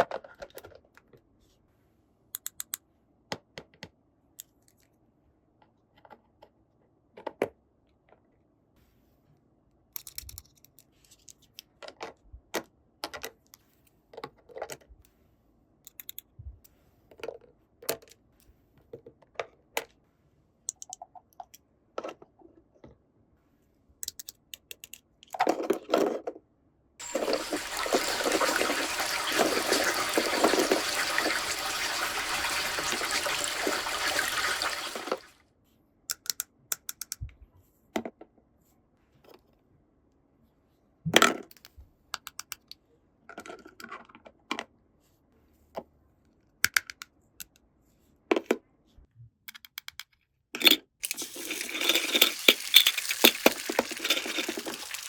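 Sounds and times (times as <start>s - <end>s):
plastic toy pieces clicking: 10.0s - 10.8s, 24.0s - 25.4s, 49.5s - 55.0s
running water: 27.0s - 35.4s, 51.0s - 55.0s.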